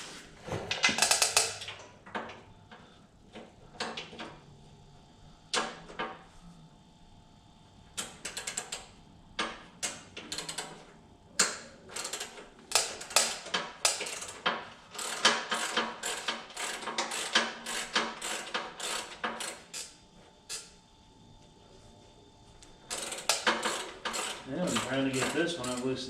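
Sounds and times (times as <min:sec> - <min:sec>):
ratchet wrench clicking: 0:08.0 - 0:08.8, 0:09.8 - 0:10.8, 0:11.4 - 0:20.7, 0:22.9 - 0:26.0.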